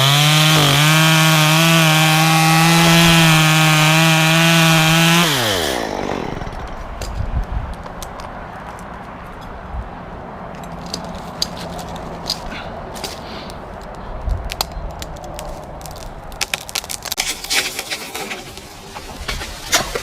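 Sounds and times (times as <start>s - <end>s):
wood cracking and snapping: 0.0s - 7.2s, 10.6s - 20.0s.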